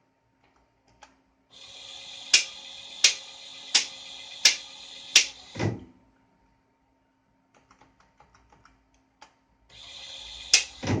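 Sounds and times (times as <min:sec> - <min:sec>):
sharp click: 0:05.2 - 0:05.4.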